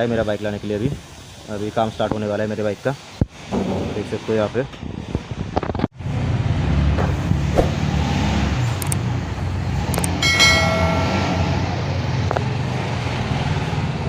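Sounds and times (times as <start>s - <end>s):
high-pitched tone: 10.2s - 12.0s.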